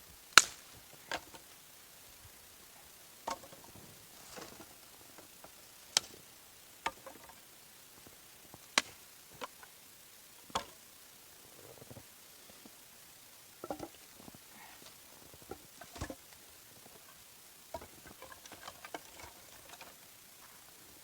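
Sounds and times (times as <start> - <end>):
sharp knocks and cracks: 0.4 - 1.5, 3.2 - 3.7, 10.5 - 10.8, 13.6 - 14.0, 15.4 - 17.1, 17.7 - 20.1.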